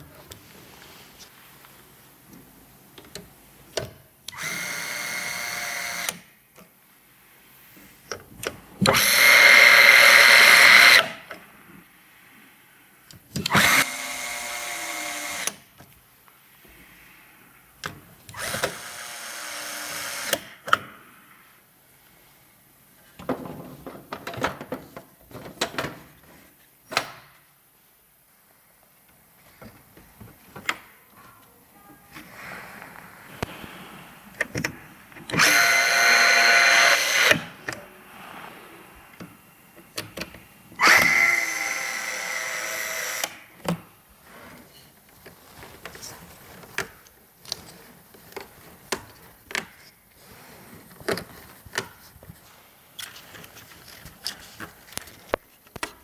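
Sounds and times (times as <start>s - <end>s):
electric screwdriver running: 4.3s - 6.2s, 8.9s - 11.1s, 13.5s - 15.5s, 18.4s - 20.4s, 35.3s - 37.5s, 40.8s - 43.4s
parts being handled: 43.6s - 56.0s.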